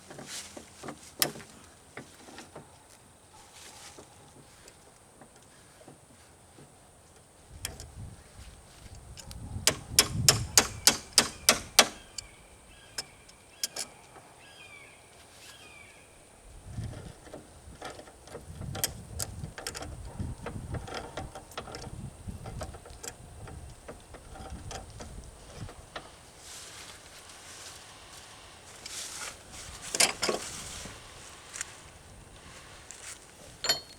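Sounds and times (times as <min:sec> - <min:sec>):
shuffling and handling noise: 0:00.0 - 0:07.5, 0:24.9 - 0:33.9
sharp tool knocks: 0:09.7 - 0:12.0.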